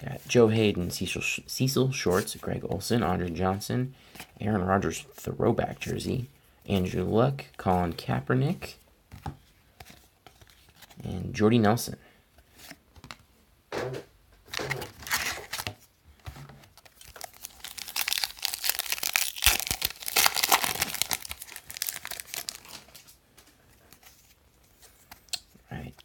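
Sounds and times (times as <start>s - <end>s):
wrapper tearing and crinkling: 14.5s - 15.7s, 16.8s - 23.1s.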